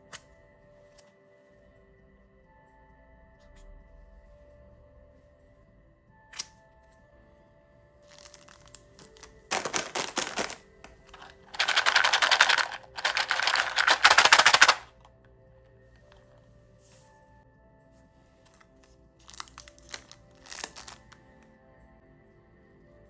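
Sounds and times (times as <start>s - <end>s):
soft background music: 0.0s - 23.0s
plastic candy wrapper crinkling: 8.1s - 14.9s, 19.2s - 21.2s.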